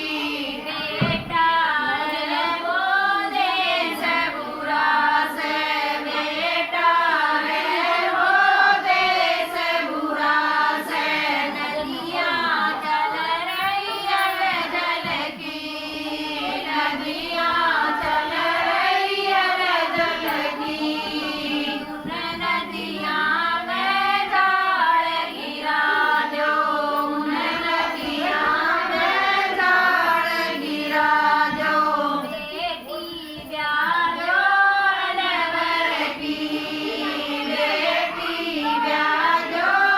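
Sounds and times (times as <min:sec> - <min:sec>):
women singing folk song in chorus: 0:00.0 - 0:39.9.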